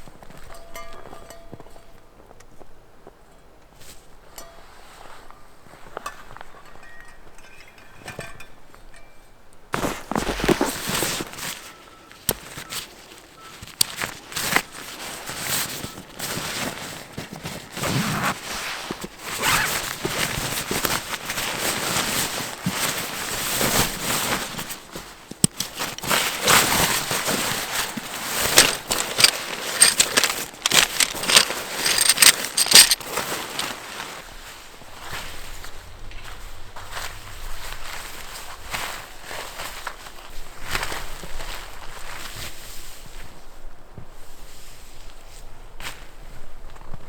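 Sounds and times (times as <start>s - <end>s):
footsteps crunching through snow: 27.2s - 34.1s.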